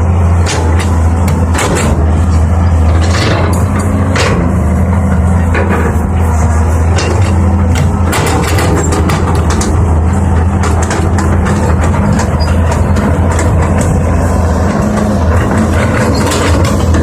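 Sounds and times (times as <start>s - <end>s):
heavy engine humming: 0.0s - 17.0s
clicks and rattles: 6.9s - 17.0s.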